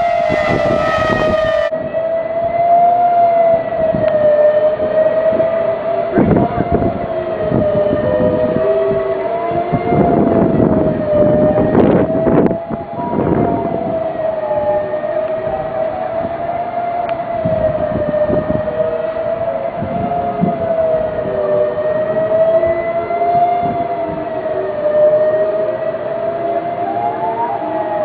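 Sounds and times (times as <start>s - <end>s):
bursts of rumbling noise: 0.0s - 1.7s
fainter lower sirens: 0.0s - 28.0s
tornado warning siren: 0.0s - 28.0s.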